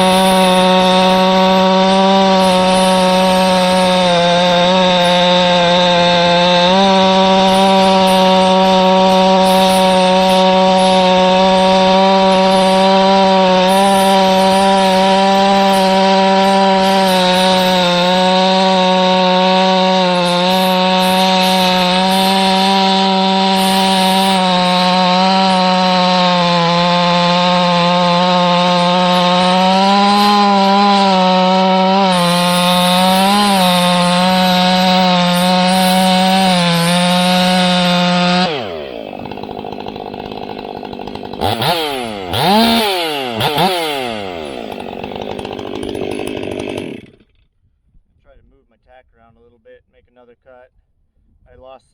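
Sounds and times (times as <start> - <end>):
chainsaw cutting wood: 0.0 - 47.5.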